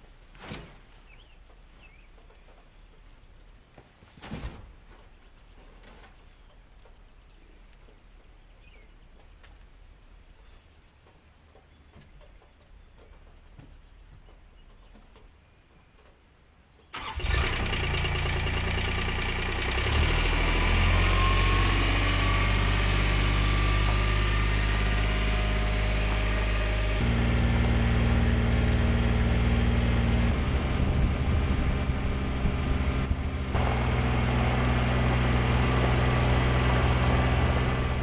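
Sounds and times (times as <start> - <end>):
vehicle engine running: 17.0 - 38.0.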